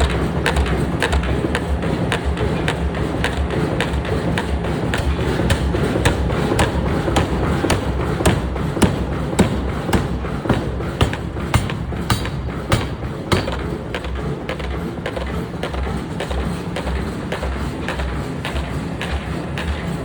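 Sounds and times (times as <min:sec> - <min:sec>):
forging hammer striking steel: 0:03.8 - 0:17.0.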